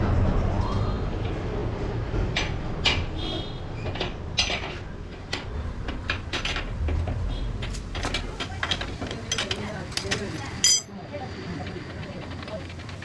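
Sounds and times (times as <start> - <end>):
metal tools clinking: 9.3 - 10.9.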